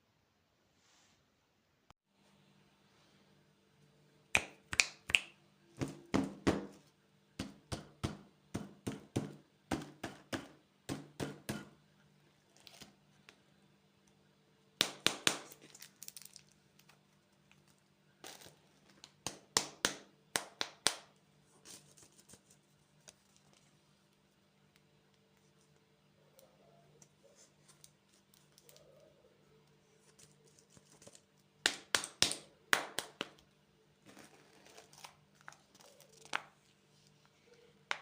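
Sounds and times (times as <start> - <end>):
faint steady hum: 0.0 - 38.0
candy packaging crackling: 14.9 - 19.8, 30.1 - 36.8.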